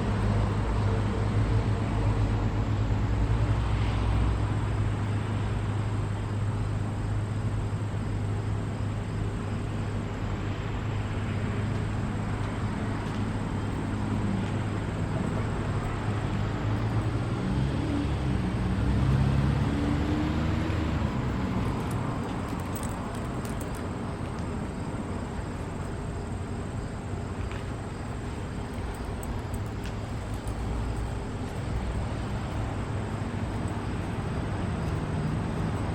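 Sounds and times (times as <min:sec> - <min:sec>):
motor vehicle passing: 0:13.0 - 0:23.8.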